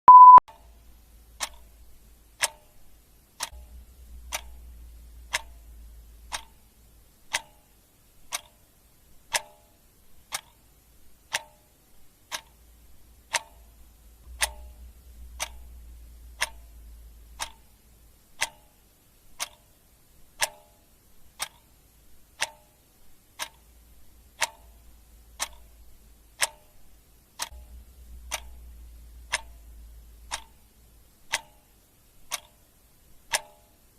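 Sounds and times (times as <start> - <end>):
short loud beep: 0.0 - 0.4
clock ticking: 0.1 - 33.9.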